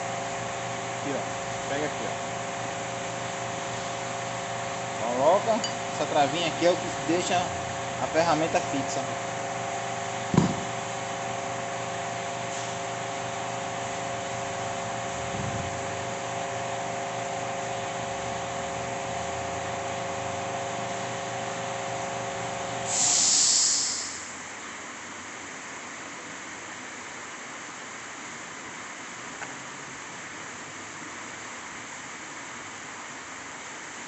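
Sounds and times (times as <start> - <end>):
machine hum: 0.0 - 22.8
sharp knock: 10.3 - 10.7
loud hiss: 22.8 - 24.5.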